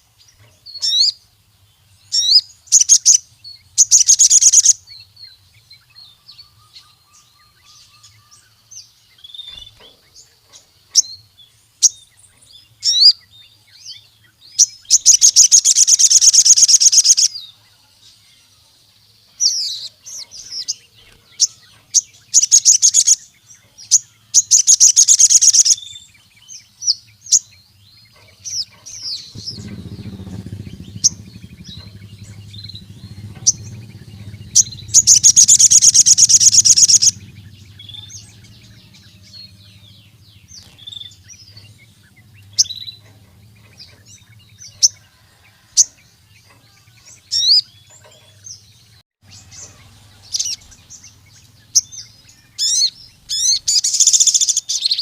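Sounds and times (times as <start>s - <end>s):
sunbird singing: 0.0s - 55.0s
low rumble: 29.2s - 45.0s.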